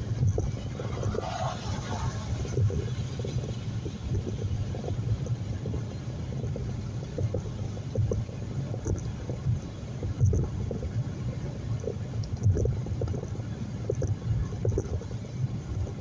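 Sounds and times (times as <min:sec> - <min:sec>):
car interior road rumble: 0:00.0 - 0:16.0.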